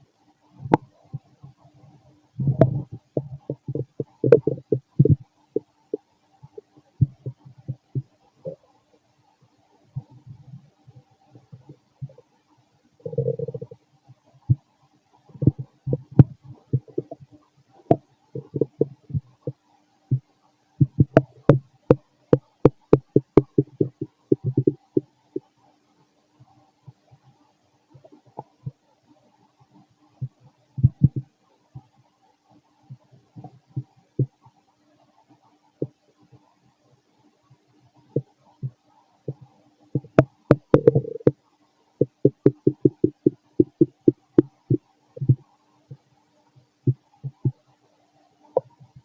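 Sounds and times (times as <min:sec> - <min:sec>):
stomach gurgling: 0:00.5 - 0:25.6, 0:27.9 - 0:28.9, 0:29.6 - 0:32.0, 0:32.9 - 0:36.7, 0:37.3 - 0:49.0
bubbling gurgle: 0:02.4 - 0:05.2, 0:22.7 - 0:25.0, 0:40.0 - 0:41.3, 0:42.0 - 0:45.4
sharp stomach clicks: 0:02.4 - 0:08.6, 0:13.0 - 0:13.8, 0:15.3 - 0:17.3, 0:17.9 - 0:25.5, 0:30.2 - 0:31.3, 0:40.0 - 0:41.4, 0:42.0 - 0:46.0.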